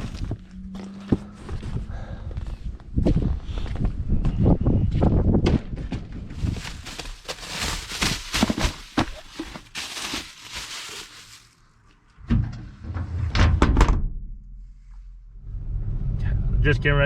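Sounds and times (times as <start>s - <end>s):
vehicle engine rumble: 0.0s - 13.0s, 14.4s - 17.0s
paper bundles rustling and thudding: 6.3s - 11.5s.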